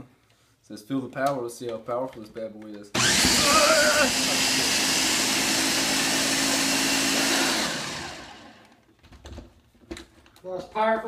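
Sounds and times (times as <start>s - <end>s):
blender running: 3.0s - 8.8s.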